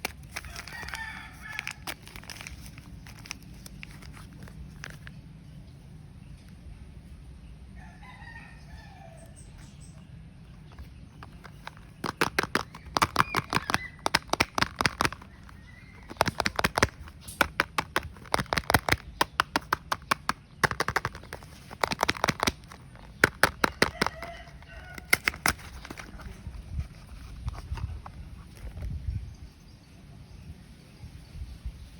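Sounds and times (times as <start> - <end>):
packaging crackling: 0.0 - 5.2, 10.7 - 28.9
chickens calling: 22.4 - 26.1.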